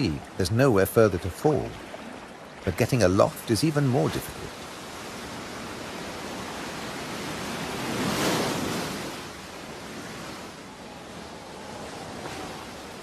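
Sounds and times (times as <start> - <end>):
sea waves washing: 0.0 - 13.0.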